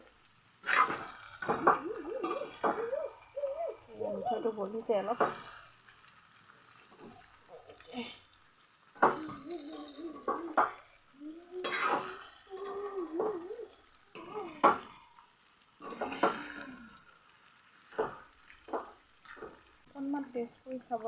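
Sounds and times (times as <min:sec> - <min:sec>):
faint sizzle: 0:00.0 - 0:21.0
spoon stirring a pan: 0:00.2 - 0:19.9
spoon knocking against pan: 0:17.9 - 0:19.6.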